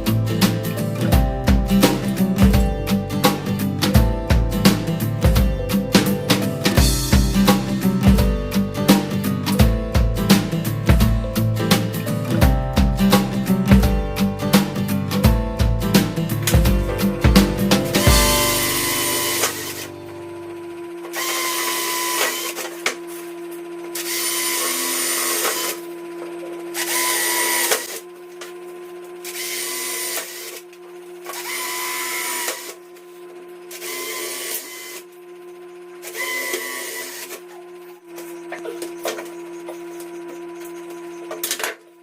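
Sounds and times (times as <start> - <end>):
low hum: 16.4 - 21.0
power drill whining: 18.0 - 28.1, 29.2 - 41.7.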